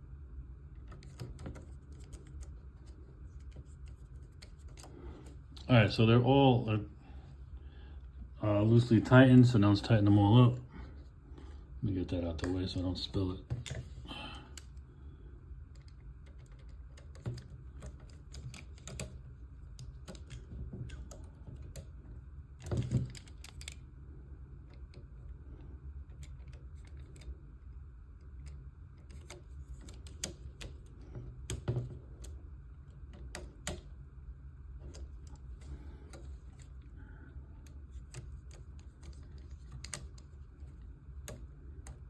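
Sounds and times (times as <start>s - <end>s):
small clicks of screws tightening: 37.6s - 42.0s.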